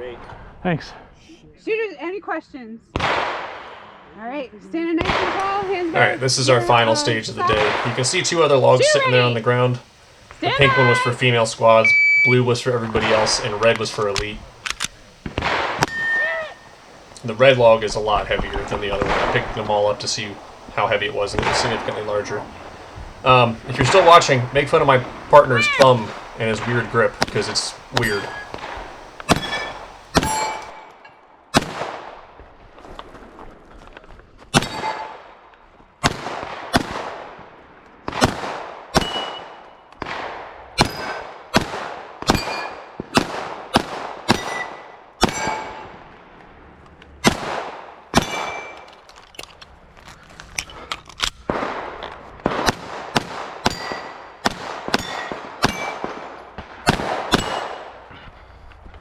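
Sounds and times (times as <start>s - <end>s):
gunshots: 3.0s - 4.1s, 5.0s - 30.9s, 31.5s - 32.3s, 34.5s - 35.4s, 36.0s - 37.5s, 38.1s - 46.1s, 47.2s - 48.9s, 51.4s - 58.2s
steel plate ringing: 9.2s - 13.8s, 15.8s - 18.0s, 19.9s - 30.9s, 53.7s - 54.2s, 55.0s - 56.0s.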